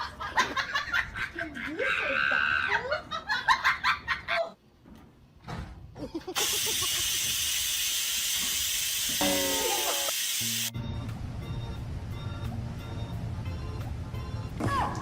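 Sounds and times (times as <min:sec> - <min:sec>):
loud steady hiss: 0:06.4 - 0:10.7
music: 0:10.5 - 0:15.0.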